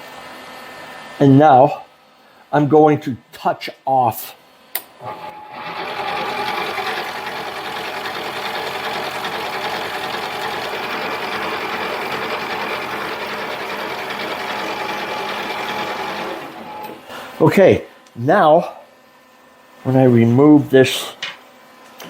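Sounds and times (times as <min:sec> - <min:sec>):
lathe motor and gear whine: 0:05.0 - 0:17.1.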